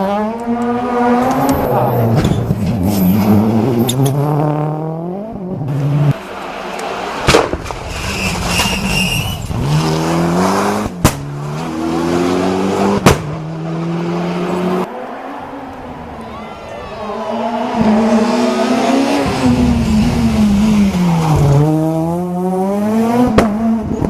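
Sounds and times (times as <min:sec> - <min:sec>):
rally car engine revving: 0:00.0 - 0:16.3, 0:16.9 - 0:24.0
tyre squeal: 0:07.9 - 0:09.8.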